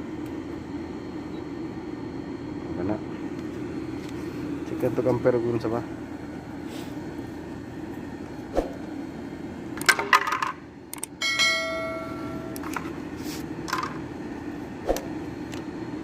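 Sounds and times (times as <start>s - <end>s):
steady low hum: 0.0s - 16.0s
metal object ringing: 11.2s - 12.6s.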